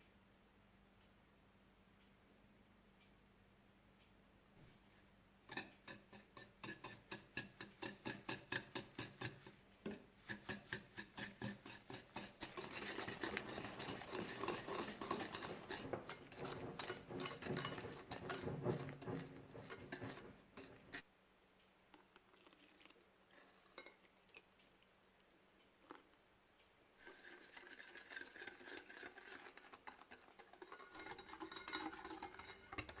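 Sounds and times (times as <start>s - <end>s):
utensil stirring in a bowl: 5.5s - 21.1s, 22.1s - 24.5s, 27.0s - 33.0s.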